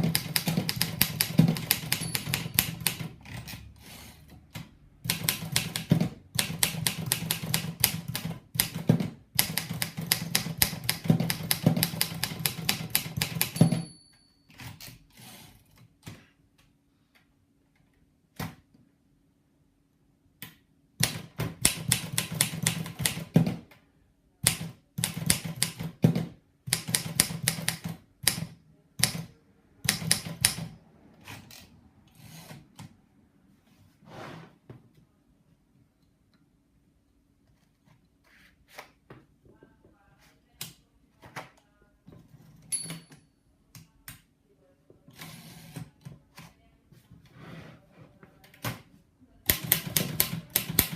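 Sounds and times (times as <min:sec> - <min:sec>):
typewriter key strikes: 0:00.0 - 0:03.6, 0:05.0 - 0:13.9, 0:26.7 - 0:30.7
typewriter bell ring: 0:01.6 - 0:03.0, 0:13.3 - 0:14.8, 0:42.7 - 0:43.3.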